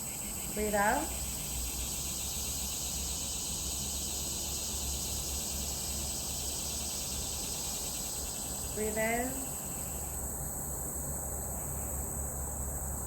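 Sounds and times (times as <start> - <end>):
insects droning: 0.0 - 13.0.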